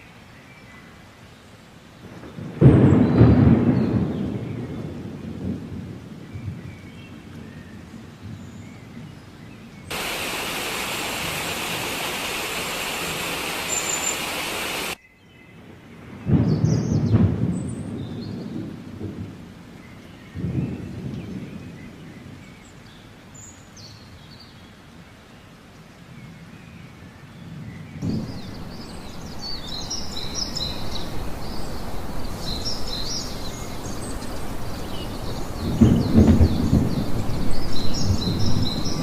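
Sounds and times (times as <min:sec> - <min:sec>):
rain: 0:00.0 - 0:39.0
thunder rumbling: 0:02.2 - 0:06.6, 0:09.9 - 0:15.0, 0:16.2 - 0:19.5, 0:28.0 - 0:39.0.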